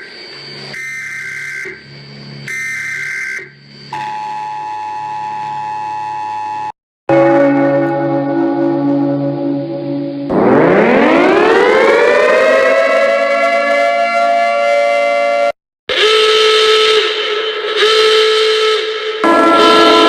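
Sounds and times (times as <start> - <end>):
emergency siren winding up: 2.4 - 20.0
alarm chord blasts: 7.1 - 14.6, 19.2 - 20.0.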